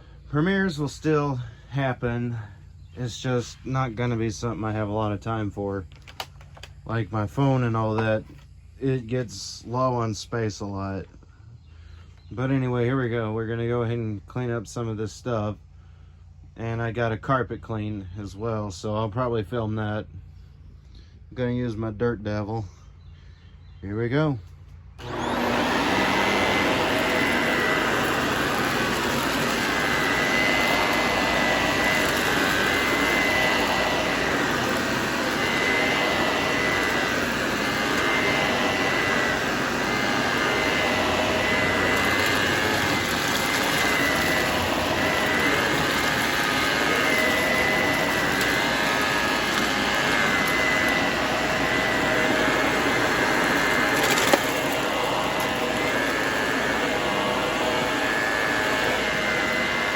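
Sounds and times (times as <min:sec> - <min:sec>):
vacuum cleaner running: 0:00.0 - 0:10.0, 0:25.0 - 0:59.9.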